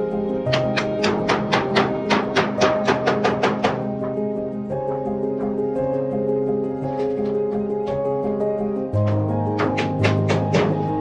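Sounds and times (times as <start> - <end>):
percussion hits: 0.5 - 4.3, 9.0 - 11.0.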